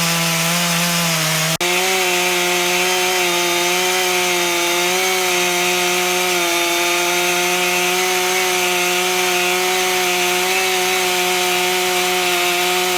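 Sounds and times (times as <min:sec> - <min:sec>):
chainsaw cutting log at full throttle: 0:00.0 - 0:12.9.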